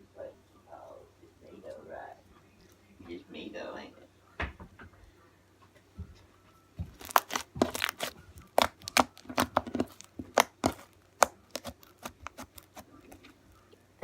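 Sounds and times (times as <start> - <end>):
slime popping and crackling: 6.9 - 12.9.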